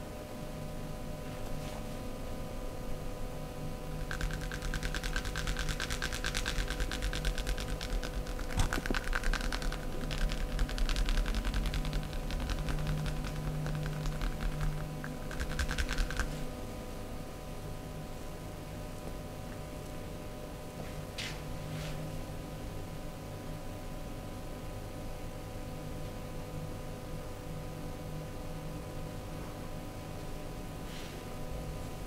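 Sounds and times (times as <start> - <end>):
faint steady hum: 0.0 - 32.0
massage hands tapping: 4.1 - 16.3.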